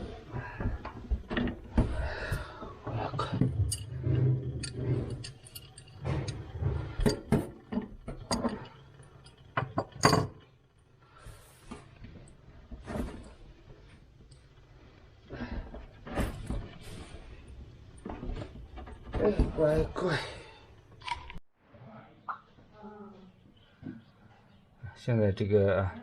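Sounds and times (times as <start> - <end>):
metal tools clinking and knocking: 3.1 - 10.7.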